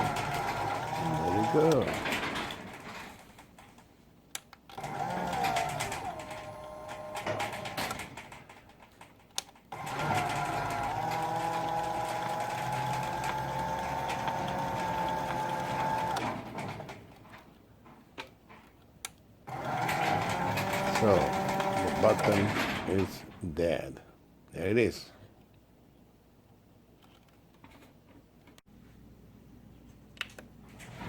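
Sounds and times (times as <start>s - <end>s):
garage door motor whine: 0.0s - 3.8s, 4.7s - 17.5s, 19.4s - 23.4s.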